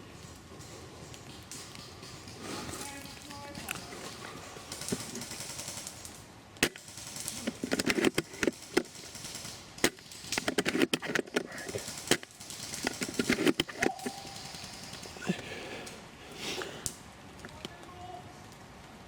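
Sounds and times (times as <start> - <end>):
clattering and rustling: 0.0 - 5.4, 6.6 - 8.9, 9.8 - 15.2
sharp cracks: 1.2 - 16.0.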